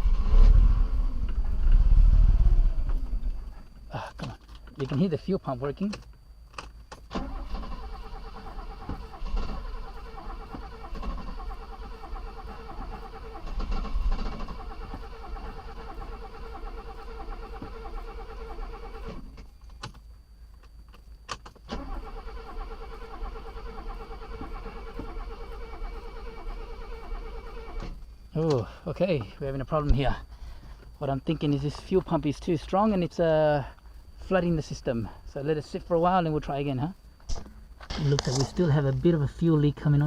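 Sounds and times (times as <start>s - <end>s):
car engine cranking: 7.0s - 19.4s, 21.7s - 28.6s.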